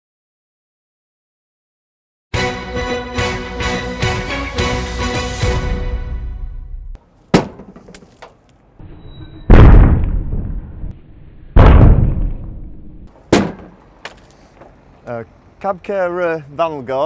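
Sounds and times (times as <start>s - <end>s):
rocks hitting plastic window guard: 7.2s - 8.6s, 13.3s - 14.7s.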